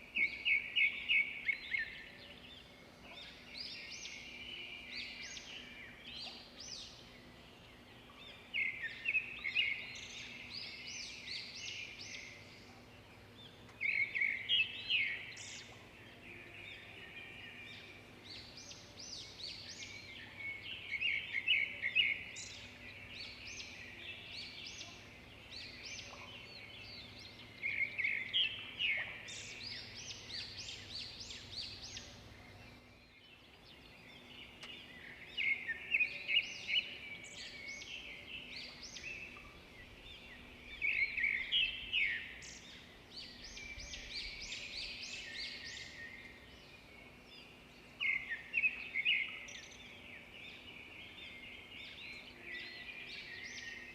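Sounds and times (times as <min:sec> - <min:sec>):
birds singing and chirping: 0:00.0 - 0:53.9.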